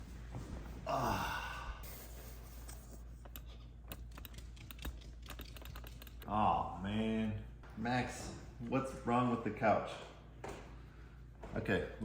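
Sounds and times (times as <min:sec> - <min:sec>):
person sighing: 0:00.8 - 0:02.0.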